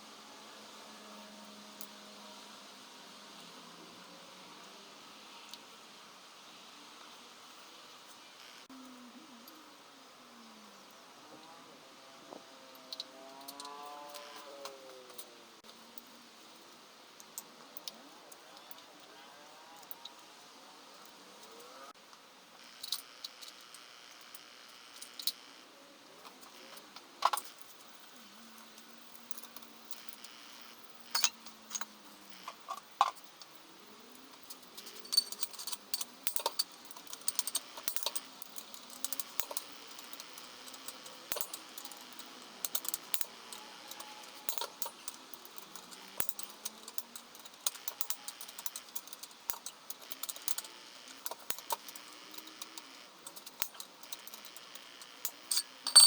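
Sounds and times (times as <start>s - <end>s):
metal parts clicking and clinking: 31.1s - 56.0s.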